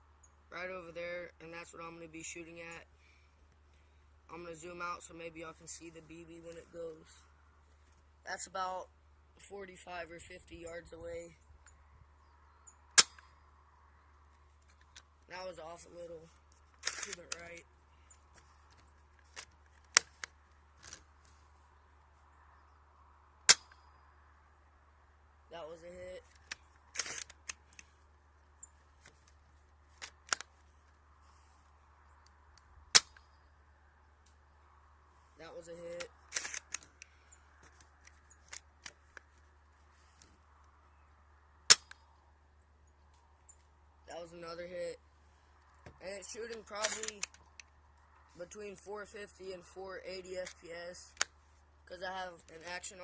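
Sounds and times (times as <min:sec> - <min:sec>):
rifle bolt clicks: 0:16.8 - 0:17.4, 0:26.3 - 0:27.9, 0:36.0 - 0:37.1, 0:46.8 - 0:47.7.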